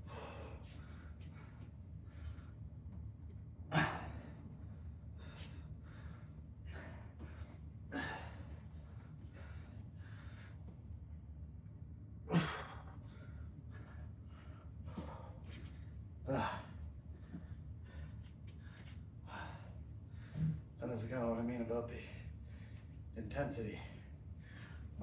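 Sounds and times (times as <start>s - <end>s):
man breathing hard: 0.0s - 2.6s, 3.7s - 10.8s, 12.3s - 20.7s
steady low hum: 0.0s - 25.0s.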